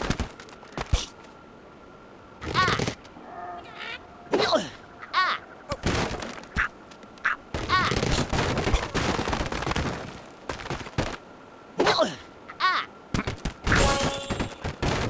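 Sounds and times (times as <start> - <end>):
crackling noise: 0.0 - 1.4, 2.4 - 11.5
squeaky chirp sound effects: 2.4 - 4.1.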